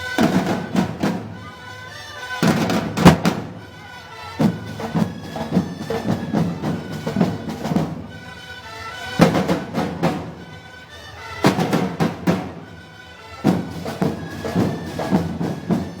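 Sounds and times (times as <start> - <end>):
street band playing: 0.0 - 16.0
drums striking: 0.2 - 1.4, 2.4 - 3.6.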